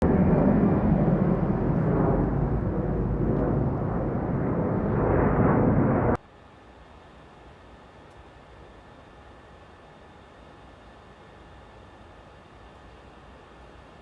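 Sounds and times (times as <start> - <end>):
jet engine rumble: 0.0 - 6.2.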